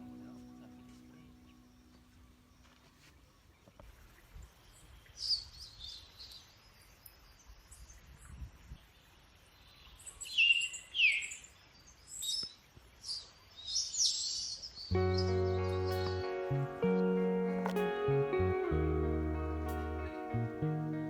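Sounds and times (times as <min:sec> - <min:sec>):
birds chirping and calling: 0:12.1 - 0:18.0.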